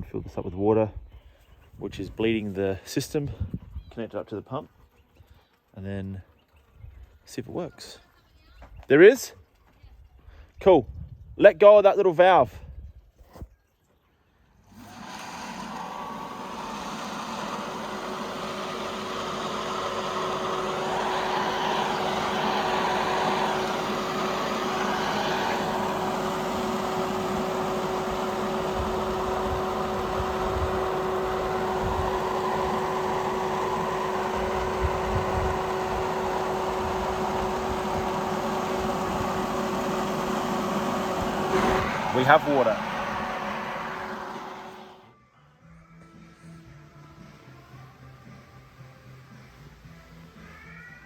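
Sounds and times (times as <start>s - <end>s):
water pump humming: 14.7s - 45.1s.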